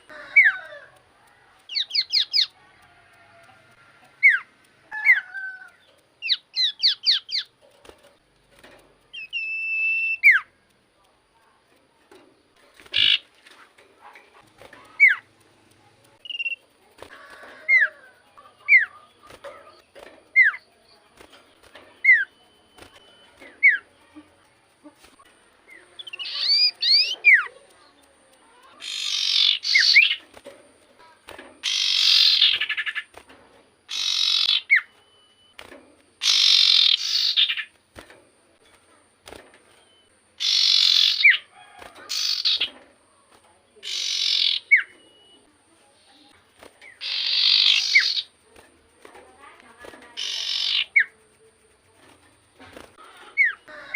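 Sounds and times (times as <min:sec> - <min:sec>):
bird harsh rasping chatters: 0:01.7 - 0:02.6, 0:04.2 - 0:07.6, 0:12.7 - 0:15.4, 0:16.1 - 0:20.7, 0:24.9 - 0:33.2, 0:33.9 - 0:34.9, 0:36.1 - 0:37.8, 0:40.3 - 0:41.5, 0:42.1 - 0:42.8, 0:43.8 - 0:44.9, 0:46.4 - 0:53.9.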